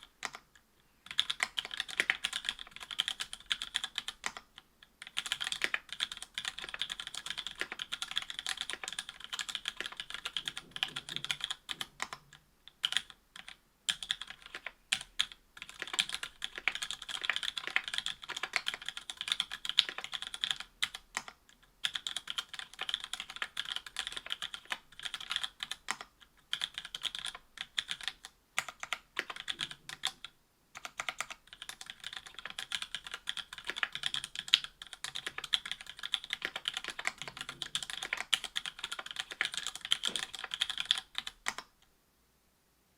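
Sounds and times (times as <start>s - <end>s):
keyboard keystroke clacks: 33.3s - 41.6s.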